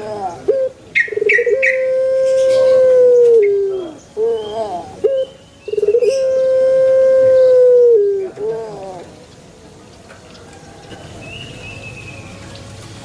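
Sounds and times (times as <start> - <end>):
dove cooing: 0.0 - 9.2.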